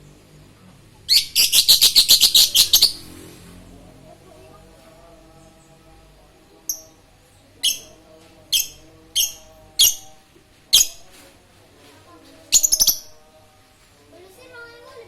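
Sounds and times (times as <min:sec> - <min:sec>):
lovebird shrill chirps: 0:01.1 - 0:03.0, 0:12.6 - 0:13.1.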